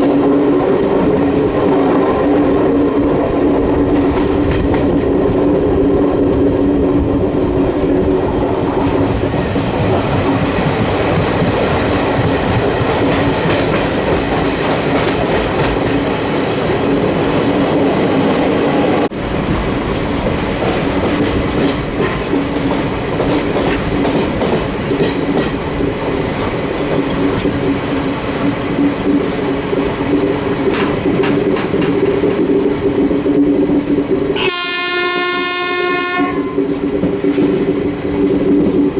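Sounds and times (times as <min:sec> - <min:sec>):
train running with steady hum: 0:00.0 - 0:38.9
wheels clicking over rail joints: 0:07.1 - 0:18.5, 0:19.5 - 0:34.3
locomotive horn: 0:34.4 - 0:36.6.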